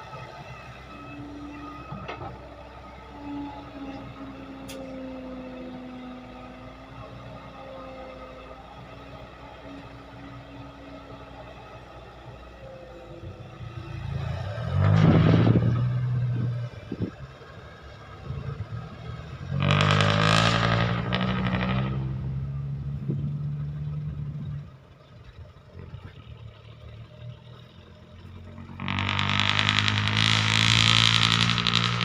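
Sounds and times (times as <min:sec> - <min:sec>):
excavator diesel engine revving: 0:12.9 - 0:32.0.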